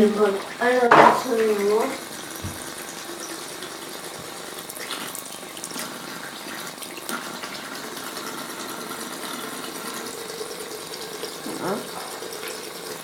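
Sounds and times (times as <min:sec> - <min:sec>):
tap water running into sink: 0:00.0 - 0:13.0.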